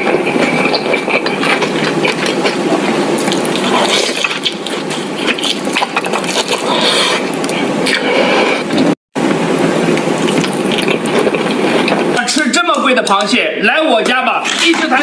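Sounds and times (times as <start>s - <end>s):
eating crab cracking and chewing: 0.0s - 8.1s, 9.9s - 12.1s.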